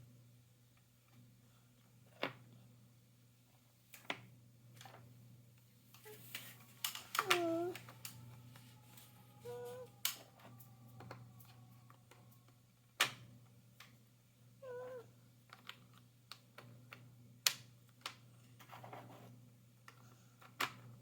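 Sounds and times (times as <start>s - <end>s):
squeaky voice sounds: 7.2s - 7.8s, 9.4s - 10.0s.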